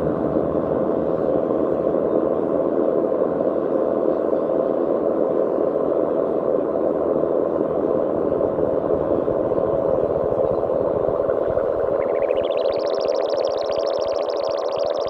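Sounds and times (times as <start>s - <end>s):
synthesizer noise drone: 8.4s - 15.0s.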